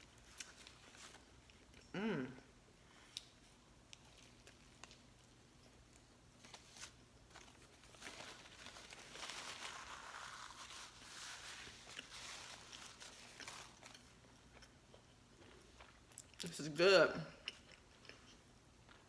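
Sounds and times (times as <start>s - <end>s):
crinkling: 3.9s - 14.7s
chewing: 10.3s - 16.4s.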